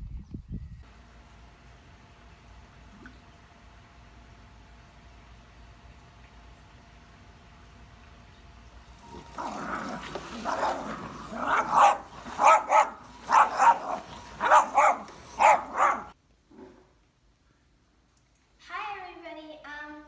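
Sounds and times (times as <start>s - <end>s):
dog barking: 10.4s - 16.2s.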